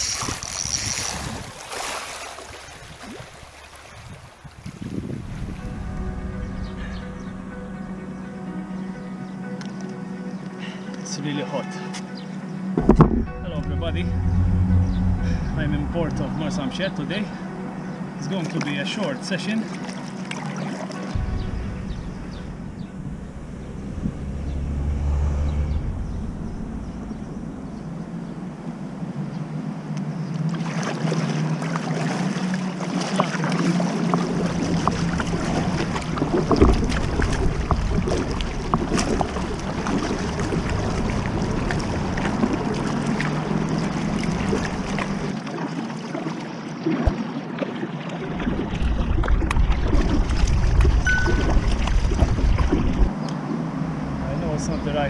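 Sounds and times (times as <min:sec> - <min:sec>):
wind noise on microphone: 0:00.0 - 0:01.7, 0:02.7 - 0:07.5, 0:34.4 - 0:42.8, 0:48.4 - 0:53.1
water lapping against kayak hull: 0:00.0 - 0:06.2, 0:18.3 - 0:22.9, 0:30.1 - 0:53.6.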